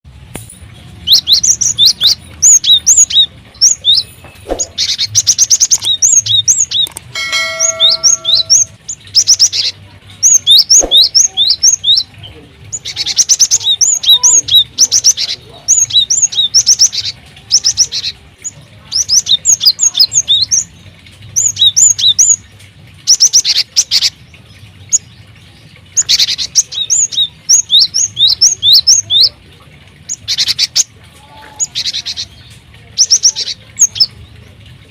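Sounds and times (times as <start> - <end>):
small birds chirping: 0.8 - 34.9
lower steady bird call: 1.1 - 20.7.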